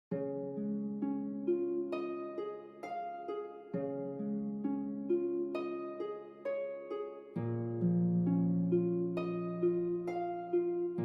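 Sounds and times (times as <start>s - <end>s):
gentle plucked harp-like tune: 0.1s - 11.0s.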